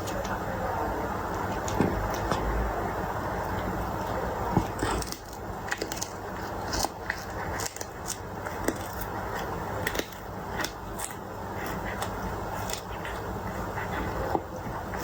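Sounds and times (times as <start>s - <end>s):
steady background hiss: 0.0s - 15.0s
cat chewing crunchy food: 3.5s - 15.0s.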